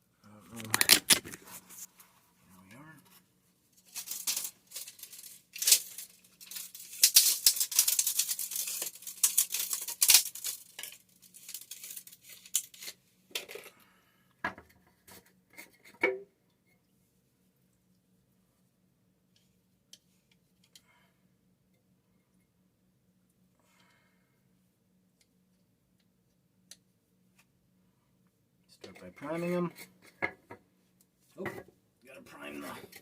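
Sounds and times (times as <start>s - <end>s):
plastic pipe rustling and scraping: 0.5s - 13.8s, 14.6s - 16.2s, 28.8s - 30.6s.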